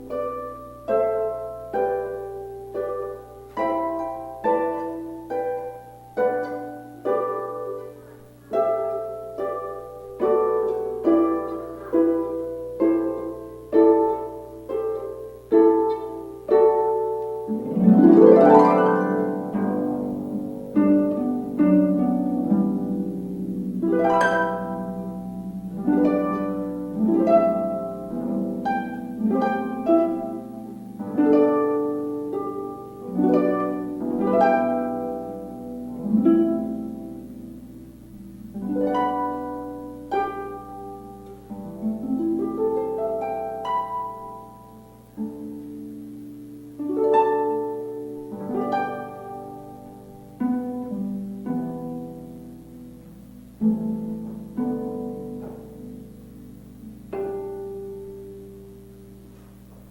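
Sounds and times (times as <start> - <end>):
harp glissando: 0.0 - 58.5
harp plucked notes: 0.0 - 59.9.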